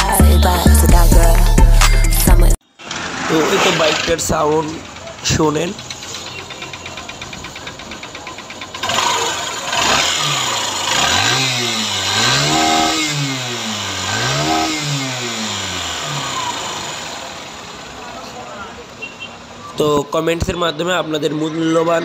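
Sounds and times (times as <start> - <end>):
motorcycle engine idling and revving: 0.9 - 19.8.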